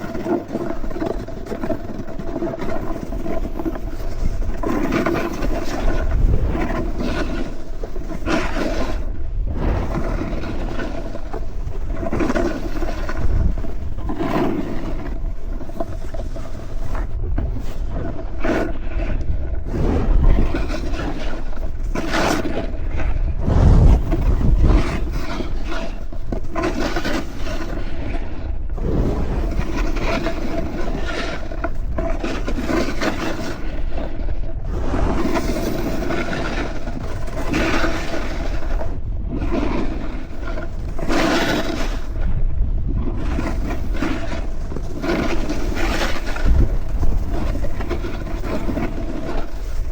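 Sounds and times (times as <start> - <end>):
wind on microphone: 0.0 - 49.9
snowboard scraping on snow: 19.5 - 28.0, 28.7 - 31.5.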